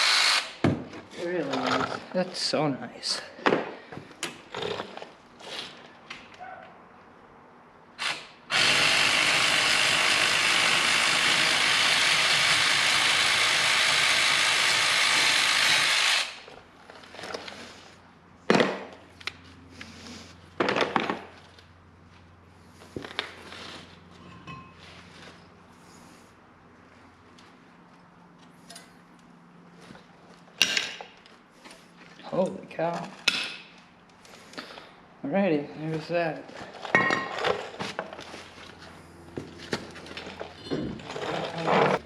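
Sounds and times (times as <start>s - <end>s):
power tool running: 0.0s - 0.6s, 8.0s - 16.5s
metal tools clanking: 24.1s - 25.2s, 36.8s - 37.8s.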